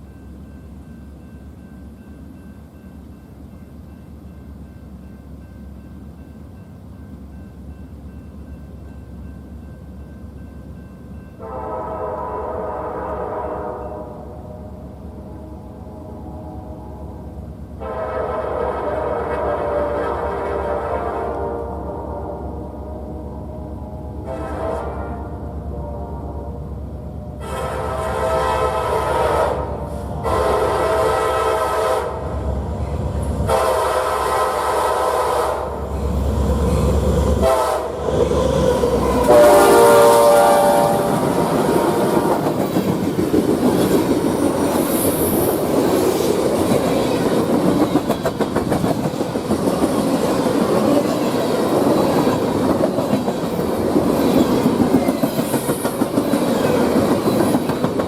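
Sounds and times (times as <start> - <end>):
locomotive horn blasts: 11.4 - 26.7, 27.3 - 32.4, 33.4 - 35.9, 37.4 - 38.2, 38.8 - 42.5
train wheels clickety-clack: 40.4 - 58.0.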